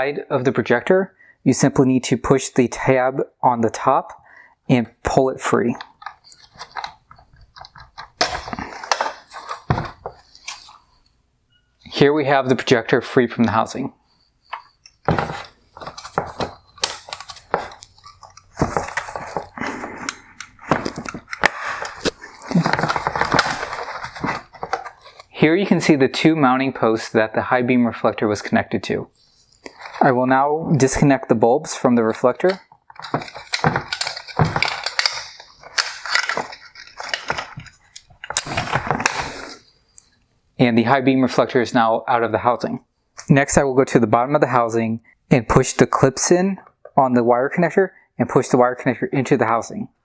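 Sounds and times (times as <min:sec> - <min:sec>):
plastic and metal parts clicking: 0:05.8 - 0:10.7, 0:14.4 - 0:25.3, 0:32.4 - 0:39.4.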